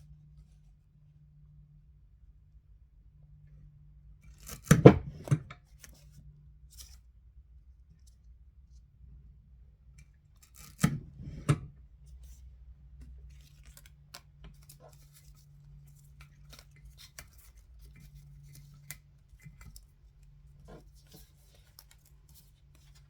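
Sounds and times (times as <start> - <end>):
scissors snipping paper: 10.4 - 10.9, 13.3 - 23.0.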